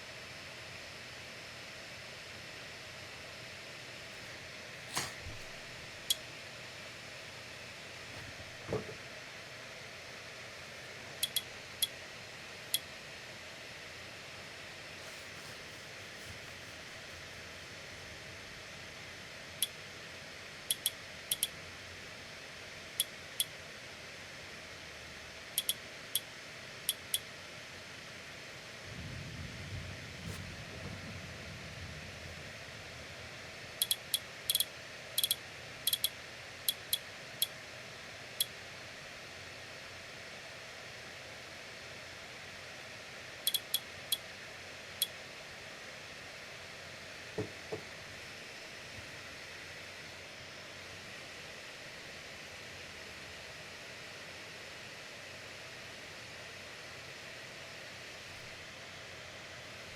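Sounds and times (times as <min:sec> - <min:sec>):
small sharp clicks: 0:11.2 - 0:11.9, 0:20.7 - 0:21.6, 0:25.6 - 0:26.3, 0:33.8 - 0:37.5, 0:43.5 - 0:44.2
steady hiss: 0:14.7 - 0:18.2.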